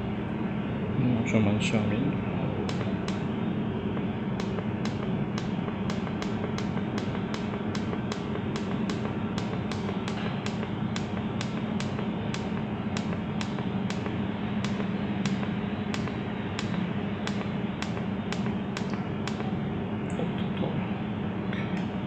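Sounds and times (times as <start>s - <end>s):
machine hum: 0.0s - 22.0s
sharp ticking: 2.6s - 3.3s, 4.4s - 19.6s.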